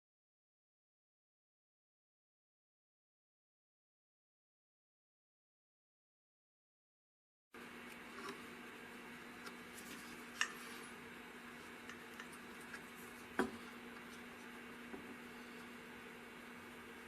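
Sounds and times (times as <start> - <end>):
faint steady hum: 7.6 - 17.0.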